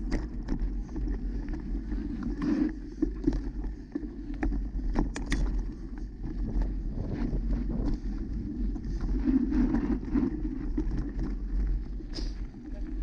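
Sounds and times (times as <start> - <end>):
bike rolling on dirt trail: 0.0 - 13.0
wind rumbling on microphone: 0.0 - 13.0
bike rattling clicks: 4.9 - 5.6.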